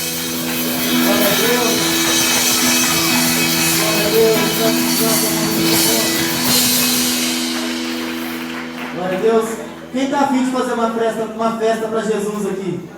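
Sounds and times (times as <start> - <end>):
drums: 0.0 - 9.0
live band playing rock music: 0.0 - 10.0.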